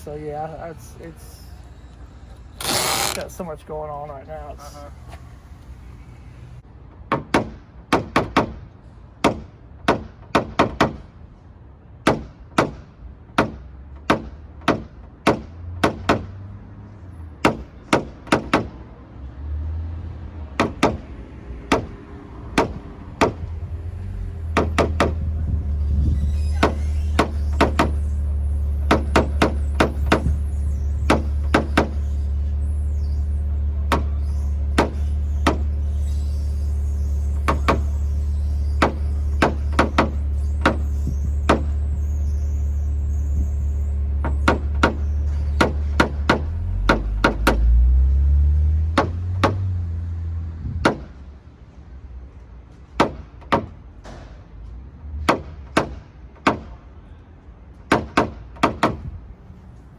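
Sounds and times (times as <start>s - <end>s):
steady low hum: 0.0s - 6.6s.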